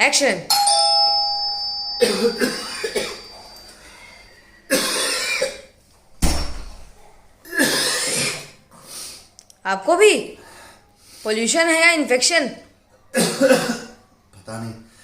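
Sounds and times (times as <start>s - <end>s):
doorbell chime: 0.5s - 4.5s
person coughing: 2.0s - 3.4s, 4.7s - 5.7s, 13.2s - 14.0s.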